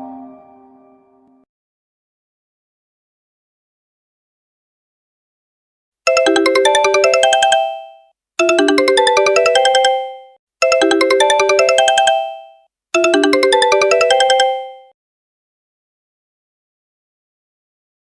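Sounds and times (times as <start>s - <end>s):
phone ringtone melody: 6.1s - 14.9s.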